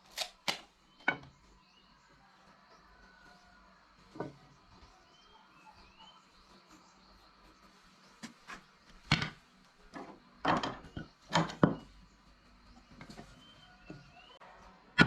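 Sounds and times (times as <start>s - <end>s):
wooden knocks and thuds: 9.0s - 11.9s.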